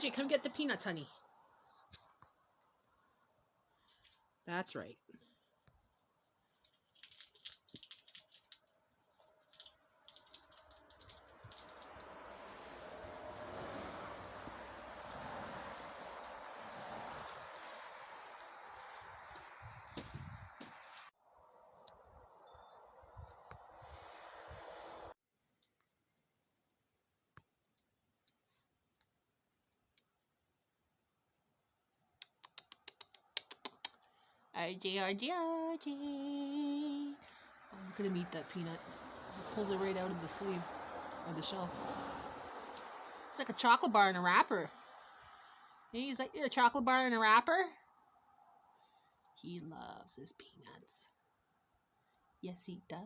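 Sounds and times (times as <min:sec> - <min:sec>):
squirrel chewing food: 0:05.3 - 0:12.1.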